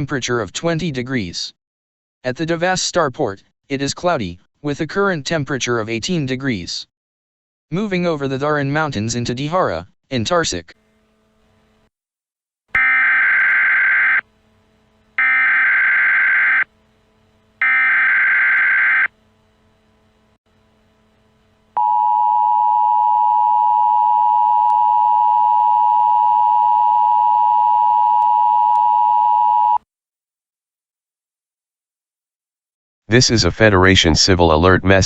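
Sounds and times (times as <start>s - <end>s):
screechy digital data bursts: 12.8s - 14.2s, 15.2s - 16.7s, 17.6s - 19.1s
two-tone attention signal: 12.8s - 14.2s, 15.2s - 16.7s, 17.6s - 19.1s.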